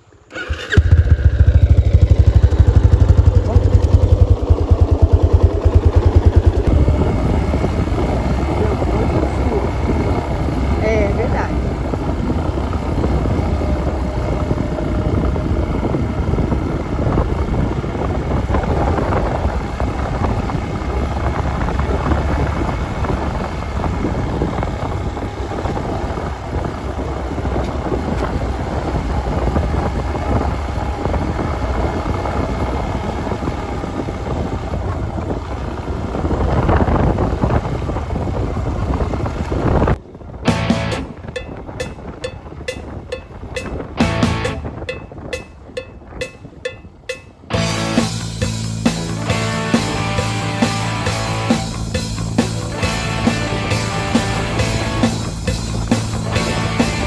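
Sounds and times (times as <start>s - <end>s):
motorcycle engine running: 0.0s - 57.0s
wind buffeting microphone: 0.0s - 57.0s.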